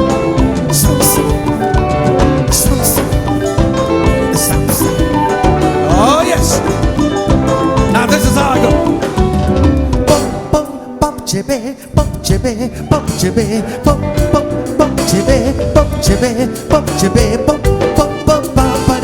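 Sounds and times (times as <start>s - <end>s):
fast percussion beat: 0.0s - 19.0s
gospel band playing dance groove: 0.0s - 19.0s
people singing: 0.6s - 1.7s, 2.3s - 3.4s, 4.1s - 7.2s.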